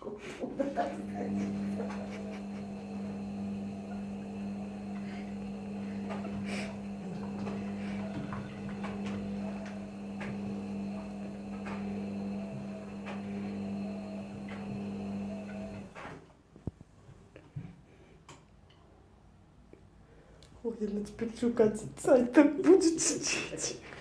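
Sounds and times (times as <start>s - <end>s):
washing machine running: 0.0s - 16.3s
washing machine knocking: 0.5s - 16.1s.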